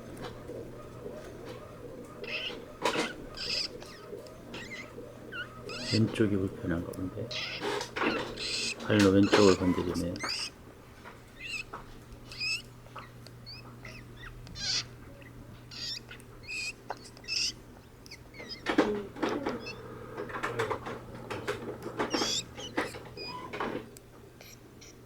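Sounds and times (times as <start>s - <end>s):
hamster squeaky wheezing snores: 22.1s - 23.5s, 24.4s - 25.0s.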